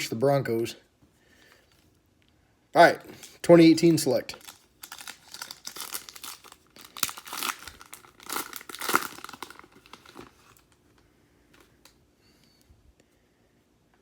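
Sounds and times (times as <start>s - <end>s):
card pack wrapper crinkling: 4.2s - 10.8s.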